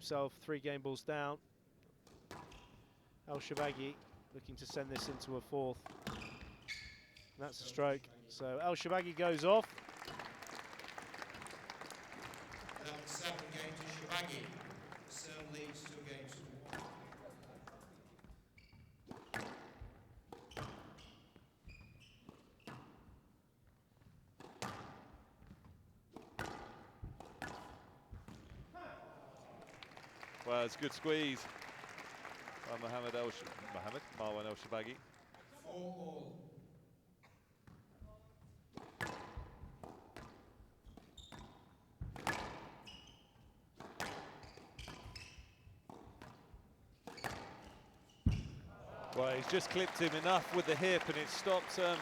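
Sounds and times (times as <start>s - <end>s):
shoes squeaking on court floor: 2.0s - 4.2s, 5.8s - 7.7s, 12.0s - 23.2s, 24.0s - 28.8s, 37.2s - 52.0s
squash ball hitting rackets and walls: 5.9s - 6.5s, 19.0s - 21.4s, 24.0s - 28.7s, 38.8s - 43.0s, 43.7s - 48.7s
shoes squeaking on wooden floor: 6.0s - 7.5s, 18.6s - 19.1s, 44.4s - 45.8s.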